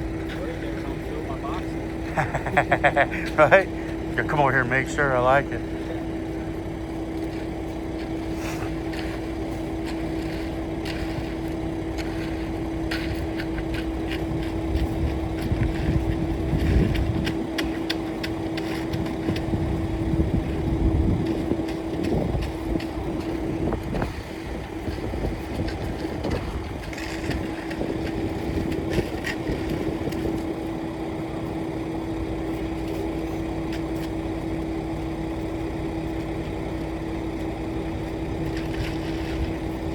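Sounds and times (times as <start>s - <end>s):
engine humming: 0.0s - 39.9s
scattered clicks and scrapes: 7.2s - 19.5s, 21.2s - 30.5s, 38.4s - 39.9s.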